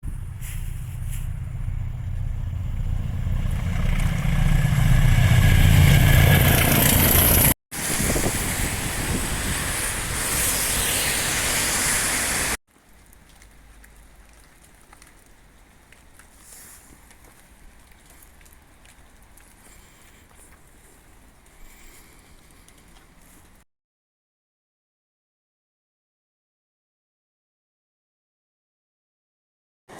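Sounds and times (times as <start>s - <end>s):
train passing close by: 0.2s - 12.6s.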